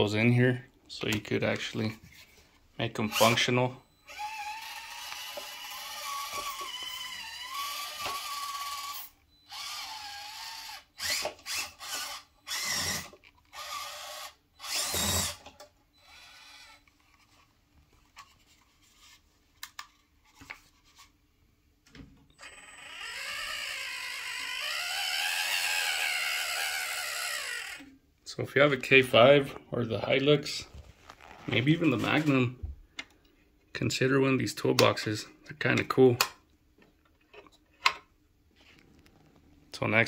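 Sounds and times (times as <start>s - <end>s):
small electric motor whining: 4.0s - 16.9s, 22.4s - 27.9s.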